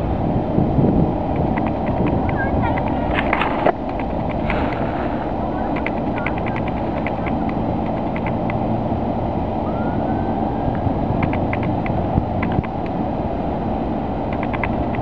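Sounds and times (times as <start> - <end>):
steady low rumble: 0.0 - 15.0
faint rising whistle: 9.6 - 10.7.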